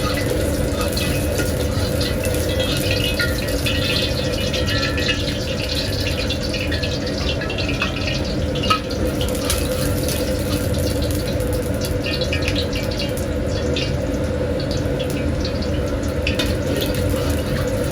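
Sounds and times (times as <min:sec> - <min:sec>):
cooking station hiss and hum: 0:00.0 - 0:17.9.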